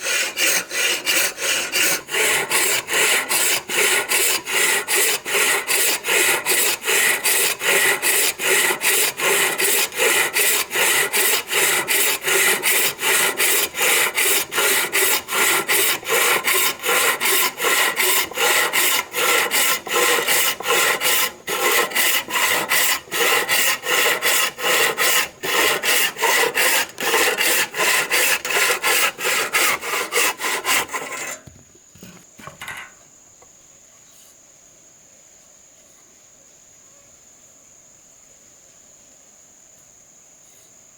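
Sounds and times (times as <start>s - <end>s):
hand tool rasping on wood: 0.0s - 32.2s.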